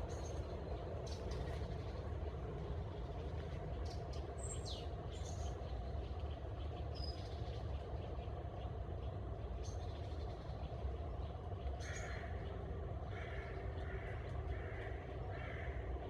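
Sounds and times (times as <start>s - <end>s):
low rumbling background noise: 0.0s - 16.0s
crow cawing: 13.1s - 15.9s.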